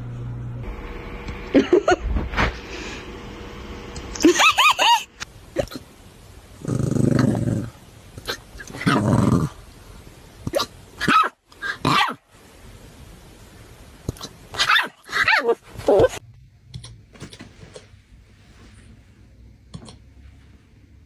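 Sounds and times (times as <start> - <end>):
puppy growling: 6.6 - 9.6.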